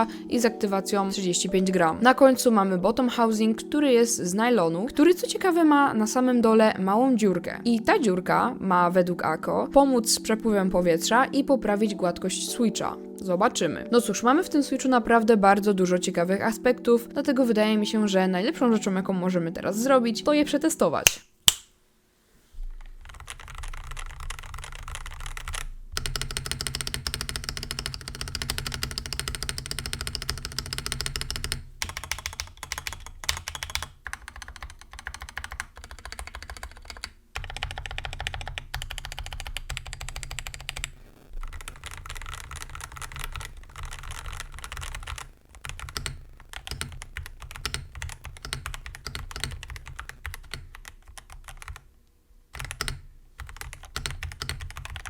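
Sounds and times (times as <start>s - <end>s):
typing on mechanical keyboard: 22.8s - 51.9s, 52.5s - 55.0s.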